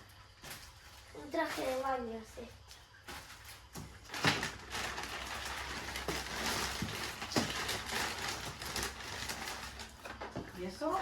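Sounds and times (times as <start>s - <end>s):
plastic packaging crinkling: 3.1s - 10.2s.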